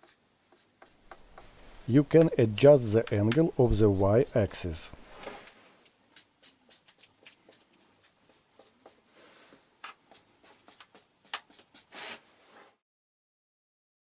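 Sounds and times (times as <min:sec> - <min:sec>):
faint scratching and tapping: 0:01.1 - 0:05.3.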